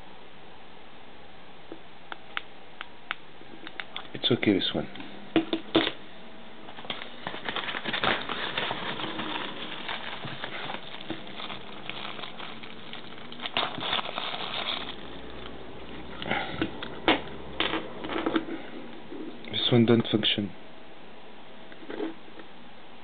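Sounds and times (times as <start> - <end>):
plastic remote controls rustling: 6.8 - 15.5.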